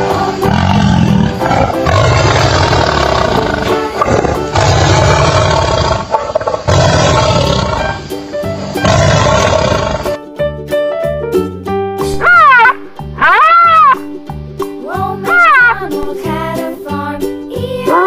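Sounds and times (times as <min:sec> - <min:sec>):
children's music: 0:00.0 - 0:02.1, 0:10.2 - 0:18.0
big cat roaring: 0:00.4 - 0:08.0, 0:08.8 - 0:10.2.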